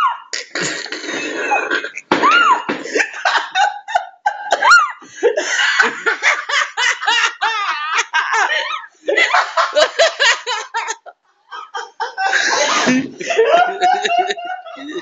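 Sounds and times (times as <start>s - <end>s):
woman's squeaky hiccups: 0.0s - 2.7s
people laughing: 2.0s - 15.0s.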